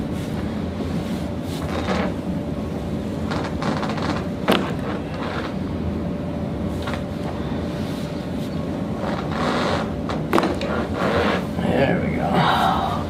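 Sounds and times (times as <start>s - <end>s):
soft rustling of movement: 0.0s - 2.3s, 6.7s - 11.6s.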